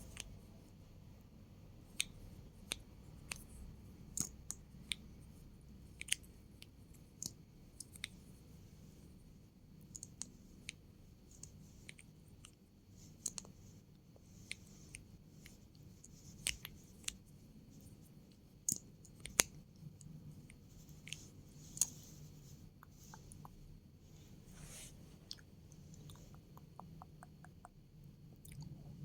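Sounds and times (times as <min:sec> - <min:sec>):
sharp clicks and small pops: 0:18.7 - 0:22.0, 0:25.3 - 0:27.8.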